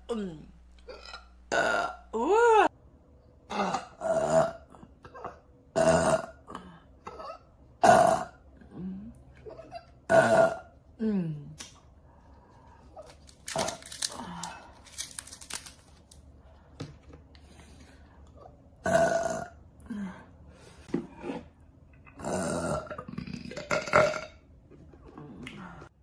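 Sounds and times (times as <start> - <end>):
woman burping: 0.1 - 2.7, 3.5 - 8.9, 9.5 - 10.7, 18.8 - 19.6, 22.2 - 24.4.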